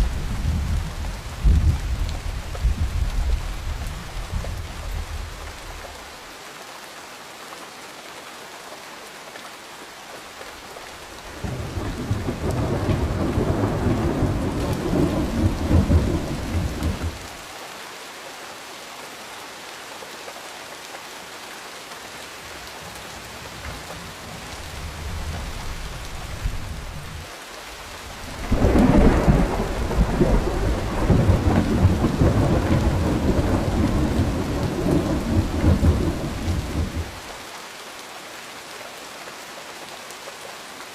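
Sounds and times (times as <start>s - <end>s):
steady rain: 0.0s - 40.9s
thunder rolling: 11.4s - 17.2s, 28.3s - 37.2s.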